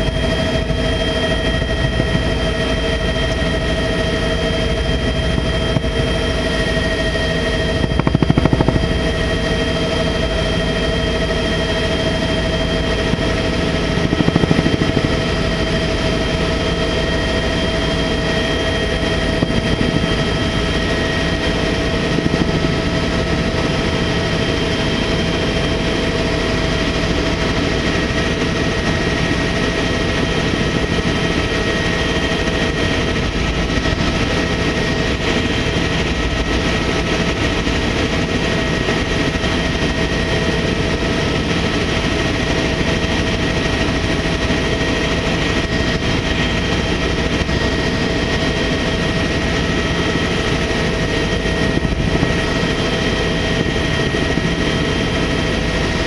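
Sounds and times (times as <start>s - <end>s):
high whine: 0.0s - 27.6s
helicopter turbine and rotor: 0.0s - 56.0s.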